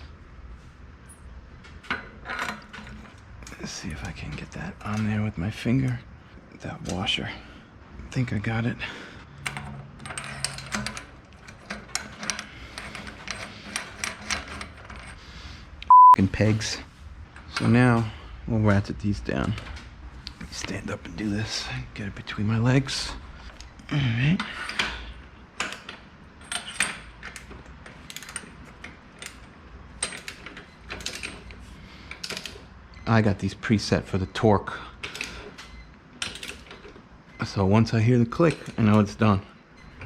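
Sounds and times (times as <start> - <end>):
small metal parts clinking: 9.4 - 15.2, 25.6 - 32.6.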